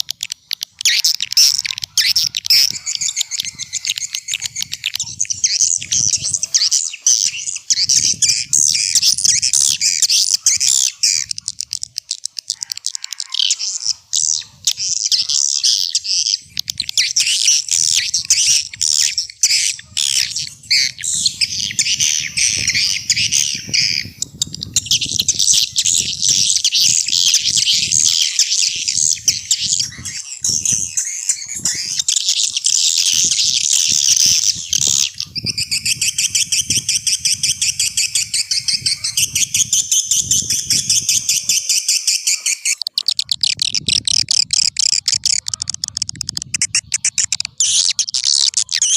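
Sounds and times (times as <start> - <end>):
swiftlets twittering: 14.2 - 48.9.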